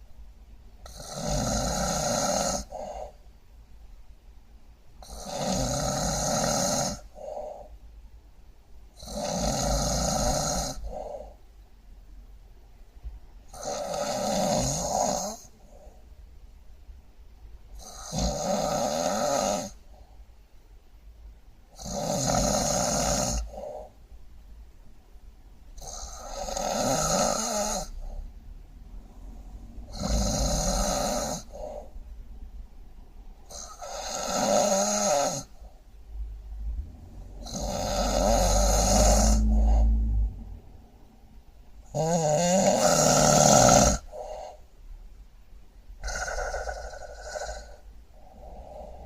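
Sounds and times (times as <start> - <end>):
loud snoring: 0.8 - 3.1, 5.0 - 7.7, 9.0 - 11.4, 13.5 - 15.5, 17.8 - 19.8, 21.8 - 23.9, 25.8 - 28.3, 28.9 - 31.9, 33.4 - 35.7, 36.6 - 40.6, 41.8 - 44.6, 46.0 - 49.0.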